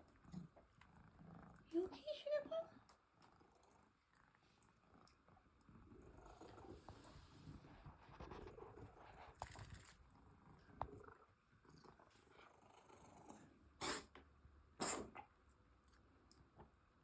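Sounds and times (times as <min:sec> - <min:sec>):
cat coughing: 0:14.8 - 0:15.2.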